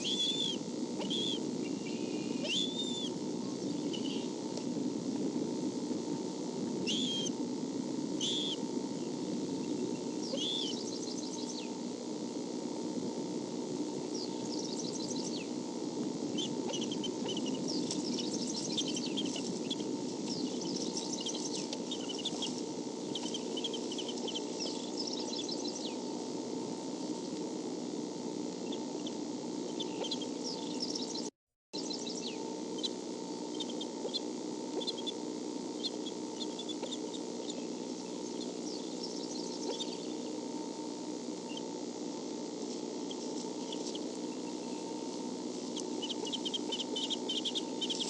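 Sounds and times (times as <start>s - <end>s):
eagle high calls: 0.0s - 4.4s, 6.8s - 7.4s, 8.1s - 11.8s, 16.2s - 26.2s, 28.6s - 31.2s, 31.8s - 40.4s, 43.0s - 48.0s
eagle chittering: 0.0s - 4.8s, 5.9s - 48.0s
low background hum: 0.0s - 48.0s.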